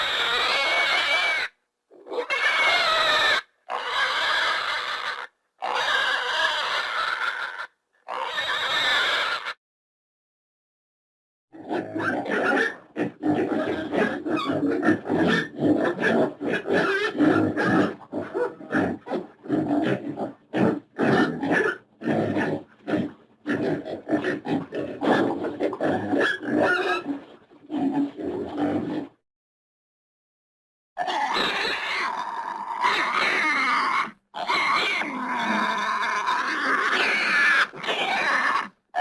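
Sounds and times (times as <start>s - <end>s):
pigs grunting: 11.6s - 29.1s, 31.0s - 39.0s.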